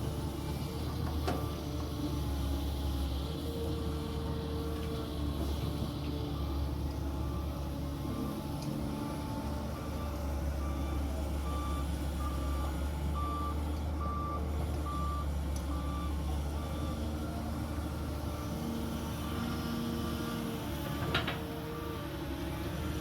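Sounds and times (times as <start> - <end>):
reversing alarm beeping: 9.8 - 17.0.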